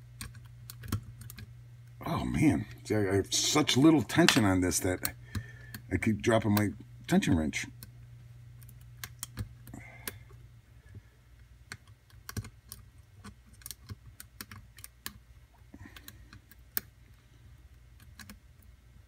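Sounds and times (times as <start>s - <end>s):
lock pick clicking on pins: 11.7s - 15.2s.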